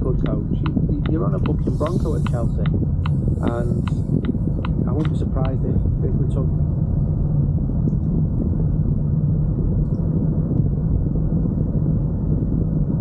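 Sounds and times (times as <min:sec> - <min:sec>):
car engine and road drone: 0:00.0 - 0:13.0.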